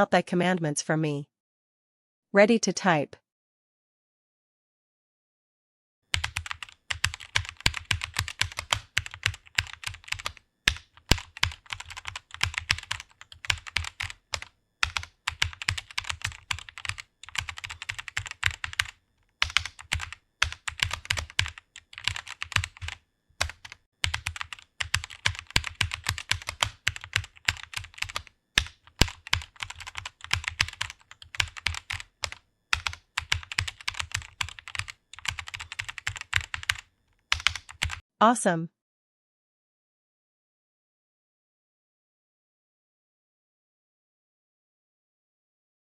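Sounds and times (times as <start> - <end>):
fast typing on computer keyboard: 6.1 - 38.0.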